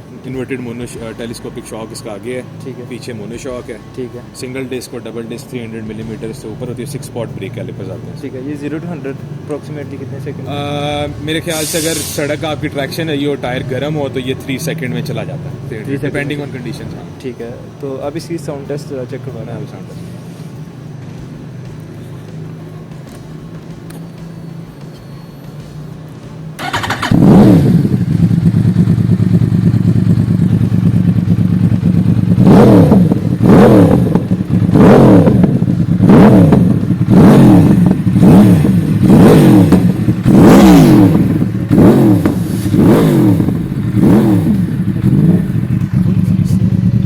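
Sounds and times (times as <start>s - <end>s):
motorcycle engine revving: 26.6s - 47.0s.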